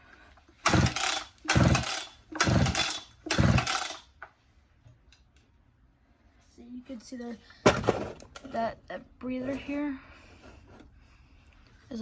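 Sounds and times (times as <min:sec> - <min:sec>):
chainsaw starter cord pulls: 0:00.6 - 0:04.1.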